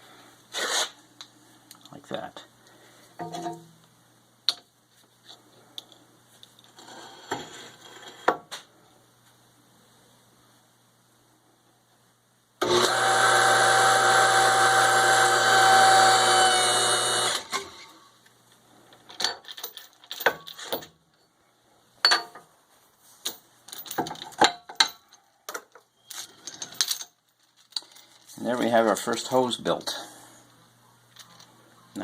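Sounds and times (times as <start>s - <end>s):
hose crimper pump motor: 12.6s - 17.8s.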